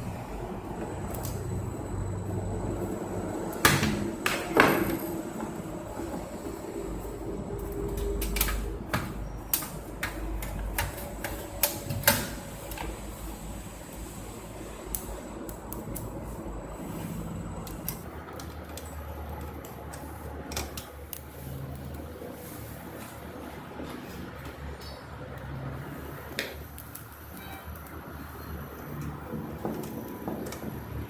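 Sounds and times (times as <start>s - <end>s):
steady low hum: 0.0s - 24.4s.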